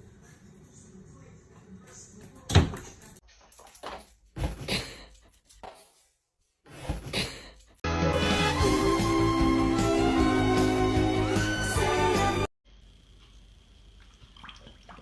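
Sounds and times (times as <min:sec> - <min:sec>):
background music: 0:07.9 - 0:12.5.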